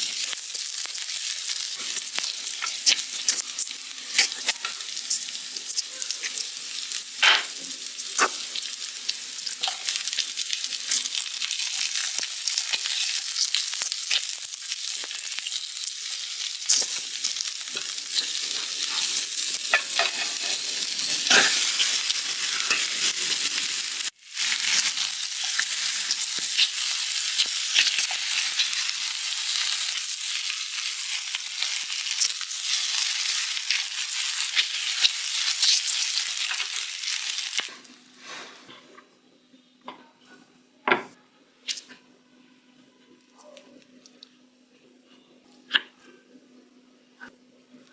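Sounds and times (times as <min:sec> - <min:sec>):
food frying in hot oil: 0:00.0 - 0:37.8.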